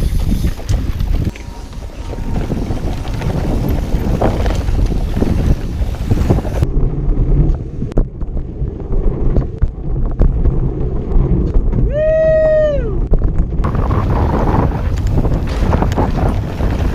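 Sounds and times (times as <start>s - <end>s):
bike rattling and knocking: 0.0s - 12.0s, 13.1s - 16.9s
tyres rumbling on trail: 0.0s - 16.9s
wind buffeting microphone: 0.0s - 16.9s.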